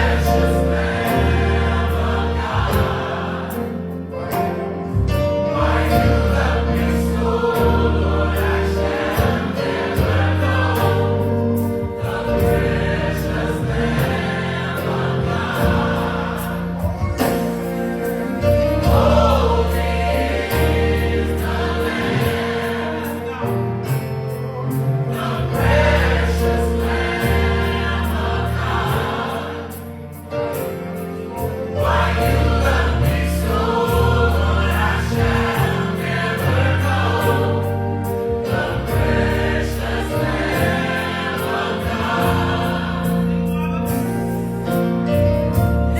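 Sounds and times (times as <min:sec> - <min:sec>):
bass and keyboard: 0:00.0 - 0:45.9
gospel choir singing: 0:00.0 - 0:45.9.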